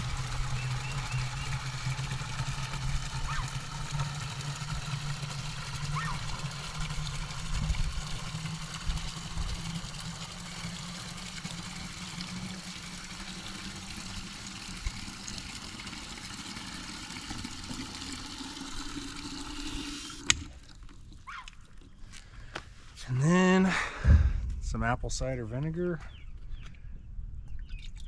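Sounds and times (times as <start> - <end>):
water running into container: 0.0 - 22.0.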